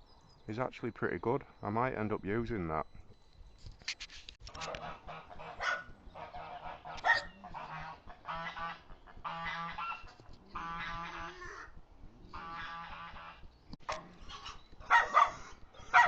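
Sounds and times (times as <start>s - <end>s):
animal calling: 4.7s - 16.0s.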